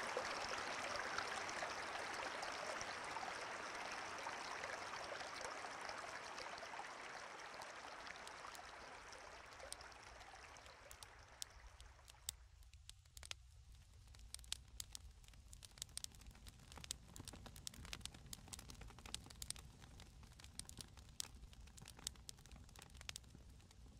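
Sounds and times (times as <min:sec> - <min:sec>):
stream flowing: 0:00.0 - 0:12.3.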